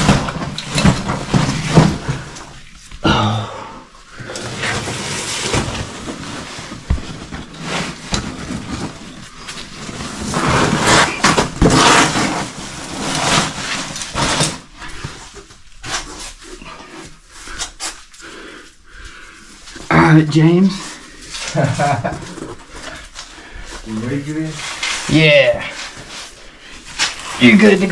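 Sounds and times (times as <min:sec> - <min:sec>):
man breathing hard and straining: 0:01.8 - 0:04.8, 0:16.5 - 0:19.9.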